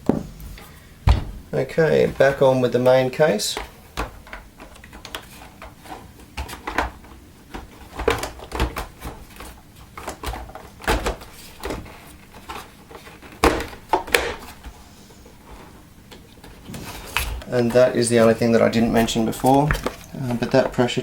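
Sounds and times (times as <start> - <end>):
plastic parts clicking and knocking: 2.0 - 14.6.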